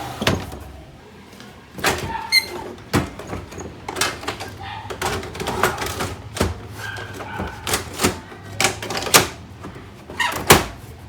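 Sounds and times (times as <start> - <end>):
printer plastic clicks and knocks: 1.8 - 10.9.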